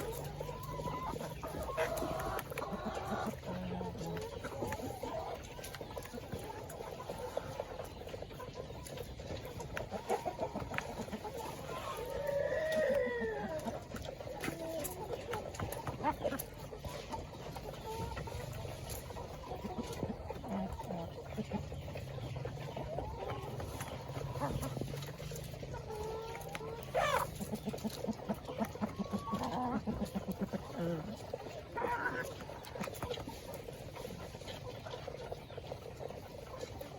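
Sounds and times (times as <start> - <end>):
chicken squawk: 0.0 - 7.8, 9.8 - 33.5
chickens clucking: 0.0 - 36.9.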